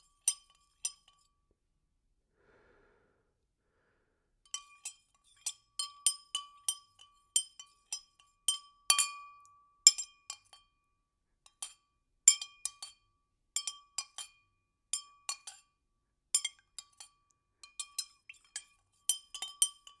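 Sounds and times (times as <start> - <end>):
spoon clinking against glass: 0.1 - 1.2, 4.5 - 9.2, 11.5 - 13.0, 13.6 - 14.4, 16.4 - 20.0.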